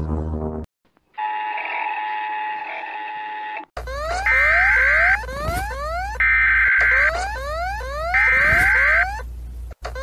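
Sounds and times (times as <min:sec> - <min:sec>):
rising pitch siren sweeps: 0:03.9 - 0:09.2.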